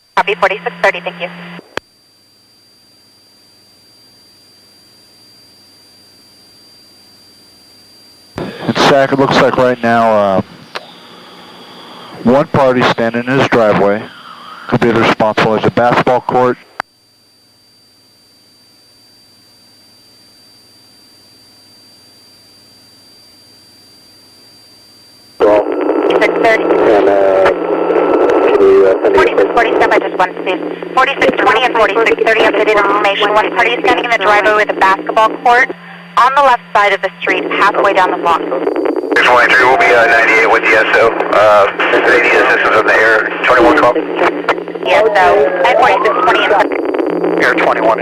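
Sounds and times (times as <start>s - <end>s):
thin high steady whine: 0.0s - 48.0s
low hum: 0.1s - 16.8s, 19.8s - 48.0s
faint radio channel hiss: 0.2s - 1.8s, 8.4s - 16.8s, 25.4s - 48.0s
high-pitched electronic tone: 44.9s - 46.6s.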